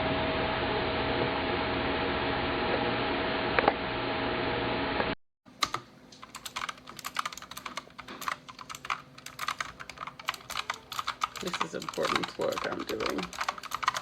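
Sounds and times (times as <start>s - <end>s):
mechanical keyboard typing: 5.6s - 14.0s.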